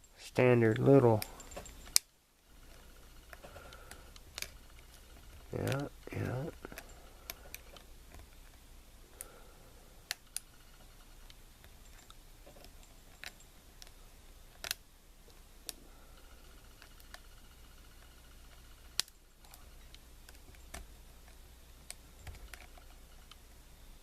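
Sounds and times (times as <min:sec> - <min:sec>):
sharp metallic clicks: 0:00.0 - 0:08.5.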